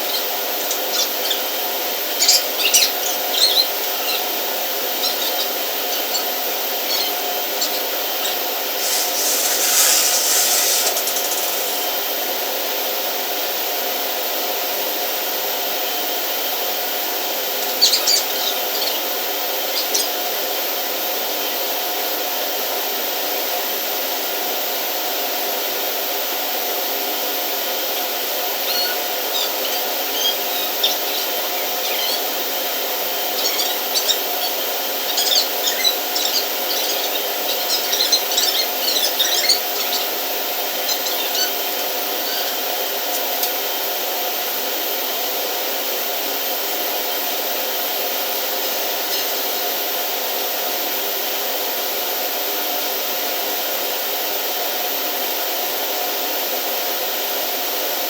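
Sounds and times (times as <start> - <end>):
mechanical hum: 6.8 - 12.3
brief hiss: 8.8 - 12.0.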